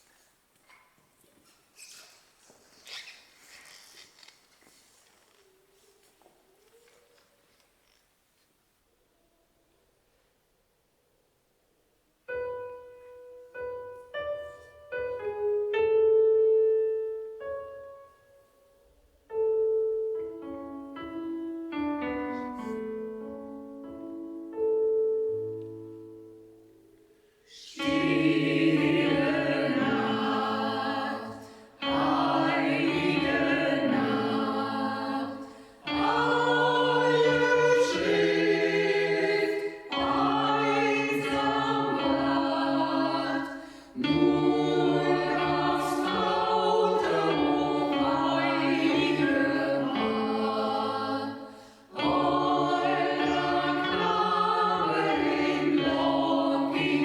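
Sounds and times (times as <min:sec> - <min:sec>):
choir singing slow song: 0:25.4 - 0:57.0.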